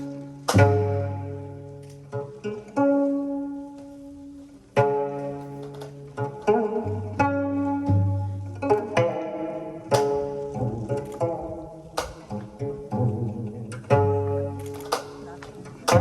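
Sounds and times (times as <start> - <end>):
bowed string notes: 0.0 - 16.0
plucked zither notes: 0.0 - 16.0
drum strikes: 0.5 - 1.0, 9.9 - 11.3.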